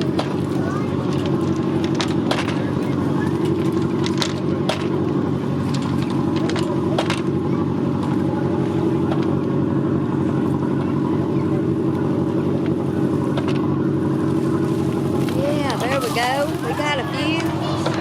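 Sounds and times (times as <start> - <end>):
boat engine drone: 0.0 - 18.0.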